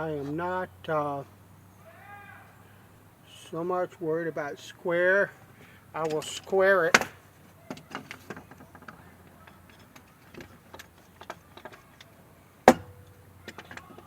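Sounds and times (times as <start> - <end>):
clamps and wood clicking: 6.0 - 14.0.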